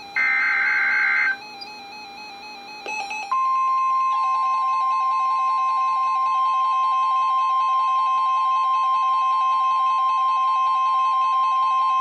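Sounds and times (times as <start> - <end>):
loud steady alarm tone: 0.0 - 2.7.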